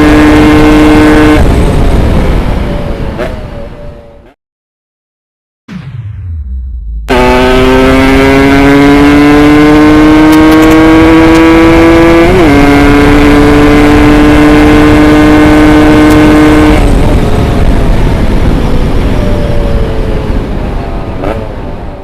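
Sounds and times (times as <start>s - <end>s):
two-stroke motorcycle engine revving: 0.0s - 1.4s, 7.1s - 17.0s
rushing wind noise: 0.0s - 4.2s, 7.1s - 22.0s.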